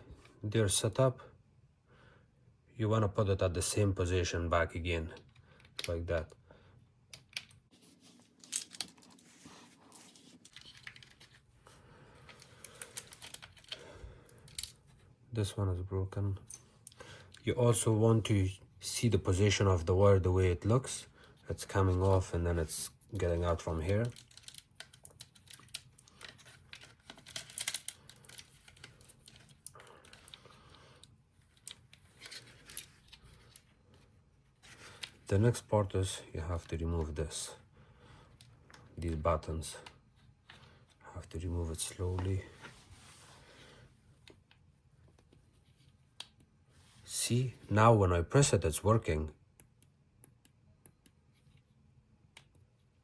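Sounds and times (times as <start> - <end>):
plastic parts clicking and rustling: 8.3 - 11.5, 12.2 - 15.0, 21.3 - 34.0
plastic parts clicking and tapping: 12.3 - 13.8, 23.8 - 30.4.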